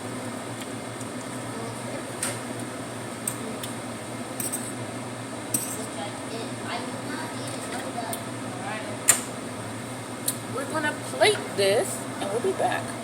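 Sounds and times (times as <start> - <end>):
utensils clinking on dishes: 5.5 - 5.8.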